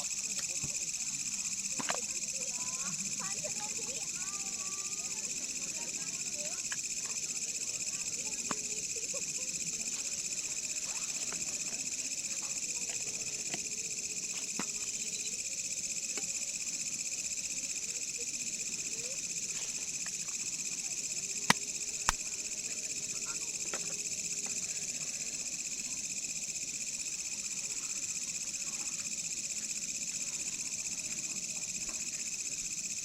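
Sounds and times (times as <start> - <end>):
insects trilling: 0.0 - 33.0.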